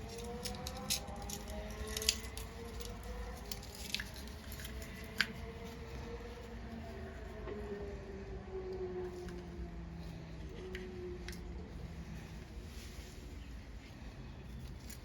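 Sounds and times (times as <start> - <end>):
small metal tools clicking: 0.0 - 5.4
faint wavering hum: 0.0 - 15.0.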